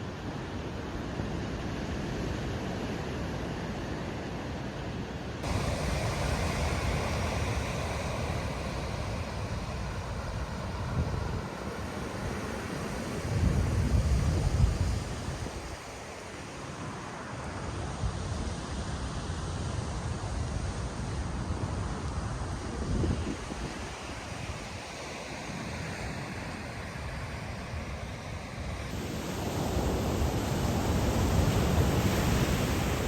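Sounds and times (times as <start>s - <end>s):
wind buffeting microphone: 5.4s - 15.9s, 21.6s - 24.8s
surf washing onto beach: 5.4s - 19.2s, 20.2s - 33.0s.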